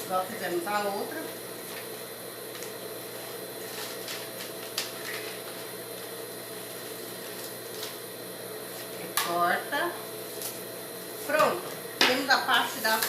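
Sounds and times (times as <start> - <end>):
steady background hum: 0.0 - 13.0
paper rustling: 3.6 - 5.7.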